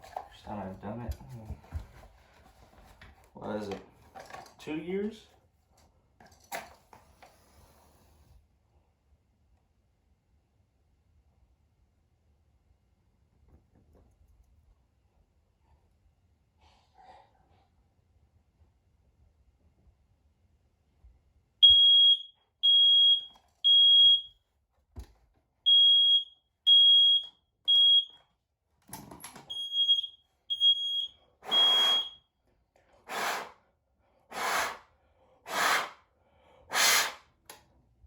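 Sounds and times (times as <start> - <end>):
smoke alarm beeping: 21.6 - 24.4, 25.7 - 28.3, 29.5 - 32.2
short bursts of hissing: 33.1 - 33.6, 34.3 - 34.8, 35.5 - 36.0, 36.7 - 37.2.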